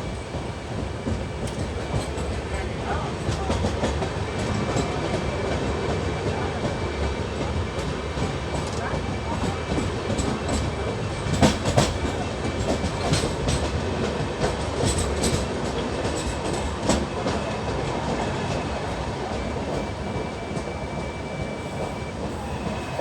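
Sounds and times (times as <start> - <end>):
train rumbling: 0.0 - 23.0
wheels clacking over rail joints: 0.9 - 20.7.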